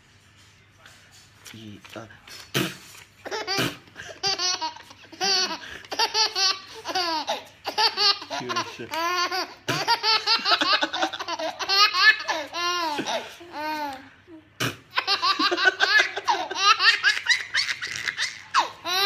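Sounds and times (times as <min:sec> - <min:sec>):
baby laughing: 0:03.2 - 0:14.1, 0:14.8 - 0:19.0.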